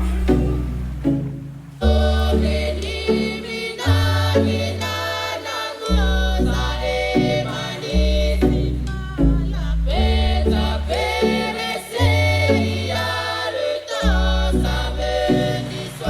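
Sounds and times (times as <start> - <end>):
deep electronic bass: 0.0 - 3.2, 5.9 - 11.4, 14.0 - 15.6
choir-like singing: 0.0 - 16.0.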